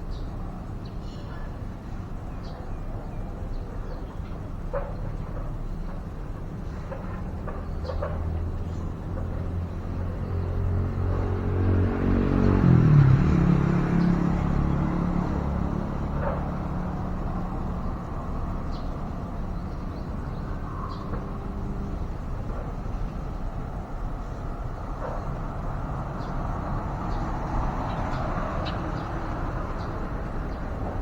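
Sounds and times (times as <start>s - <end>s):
vehicle engine passing by: 9.5s - 31.0s.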